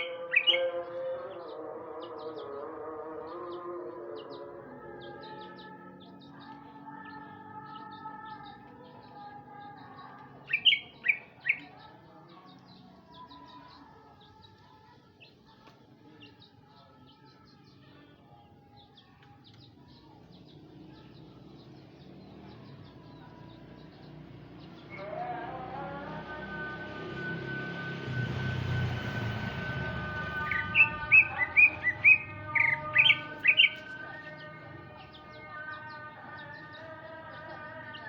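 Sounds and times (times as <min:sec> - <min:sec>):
bird chirping and singing: 0:00.0 - 0:38.0
rising engine-like noise: 0:26.4 - 0:32.6.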